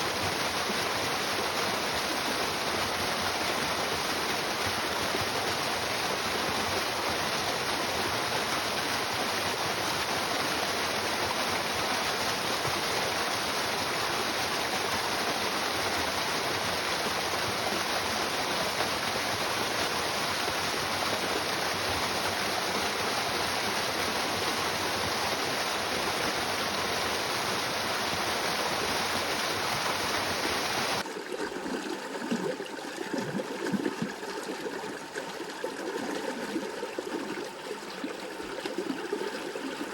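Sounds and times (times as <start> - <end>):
water trickling and gurgling: 0.0 - 39.9
river water rushing: 13.3 - 31.0.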